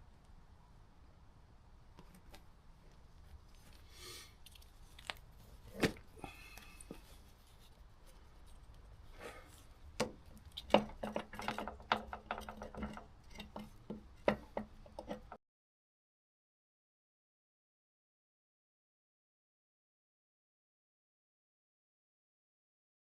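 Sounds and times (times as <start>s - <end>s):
metal tools clicking and knocking: 10.0s - 15.4s
rattling clicks: 10.4s - 15.4s.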